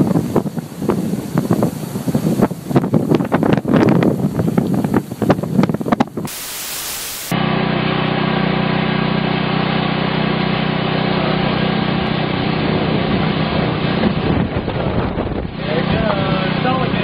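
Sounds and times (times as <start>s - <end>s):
dense rushing noise: 6.2s - 7.4s
static hiss: 6.2s - 7.4s.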